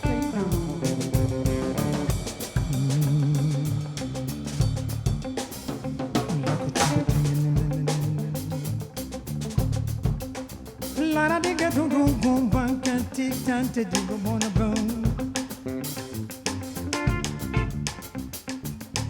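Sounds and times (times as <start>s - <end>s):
bass notes: 0.0s - 19.0s
drum kit playing: 0.0s - 19.0s.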